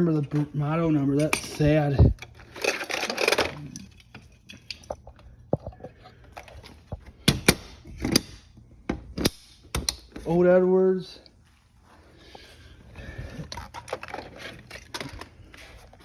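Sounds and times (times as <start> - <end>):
devices rattling clatter: 1.2 - 5.0.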